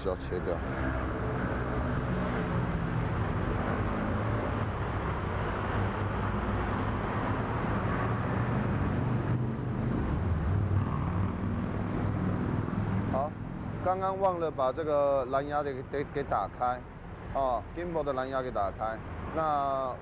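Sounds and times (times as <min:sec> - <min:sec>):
road noise of passing vehicles: 0:00.0 - 0:20.0
vehicle engines: 0:00.0 - 0:20.0.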